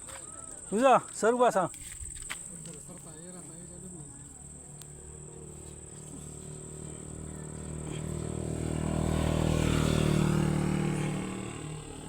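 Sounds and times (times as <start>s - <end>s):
motor vehicle engine hum: 3.6s - 12.0s.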